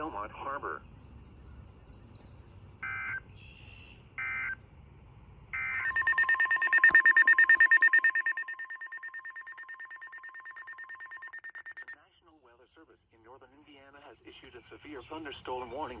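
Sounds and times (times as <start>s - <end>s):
pulsing electronic alert beep: 5.7s - 12.0s
digital data tone bursts: 5.8s - 12.0s.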